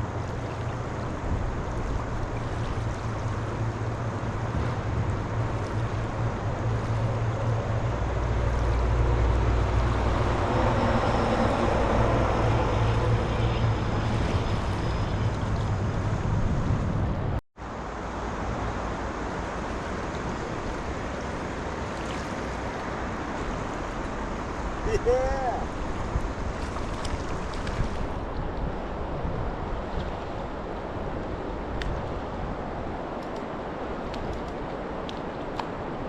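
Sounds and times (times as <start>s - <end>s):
river water rushing: 0.0s - 16.6s, 17.6s - 36.0s
wind buffeting microphone: 20.0s - 36.0s.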